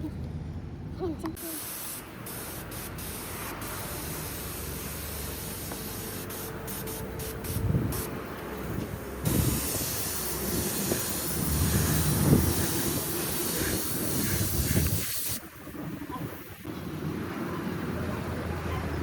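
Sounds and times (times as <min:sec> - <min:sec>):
compressed air spraying: 0:01.4 - 0:08.2, 0:09.2 - 0:15.5.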